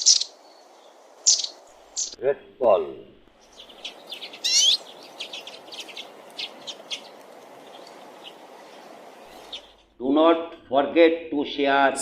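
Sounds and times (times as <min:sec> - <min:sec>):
bird chirping and trilling: 0:00.0 - 0:02.2, 0:03.4 - 0:09.9.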